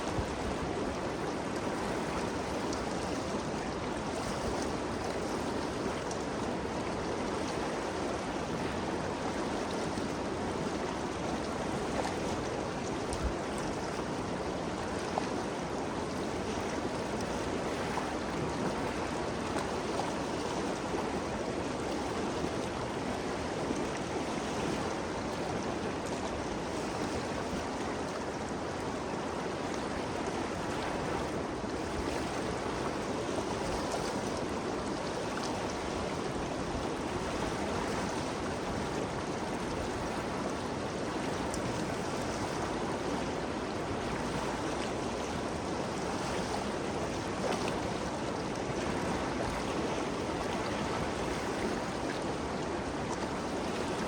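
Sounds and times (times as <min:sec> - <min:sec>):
river water rushing: 0:00.0 - 0:54.0.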